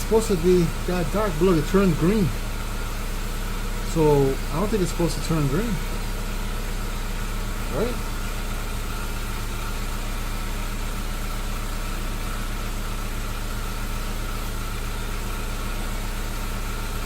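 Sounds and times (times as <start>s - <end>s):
car engine idling: 0.0s - 17.0s.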